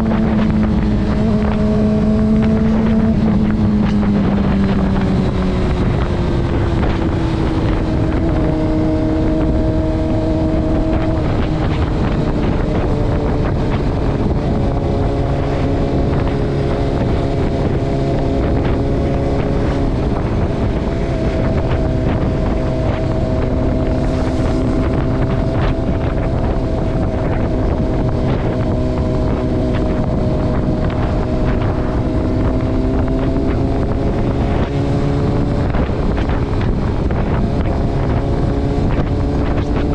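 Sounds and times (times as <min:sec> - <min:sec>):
motorcycle engine running: 0:00.0 - 0:39.9
wind buffeting microphone: 0:00.0 - 0:39.9.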